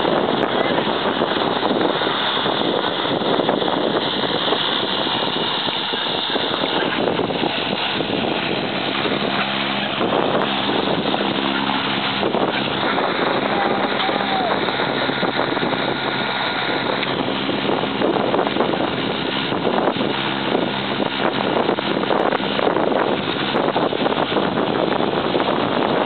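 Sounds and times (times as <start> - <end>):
low even hum of tones: 0.0 - 24.0
plane engine and propeller: 0.0 - 26.0
rush of air: 0.0 - 26.0.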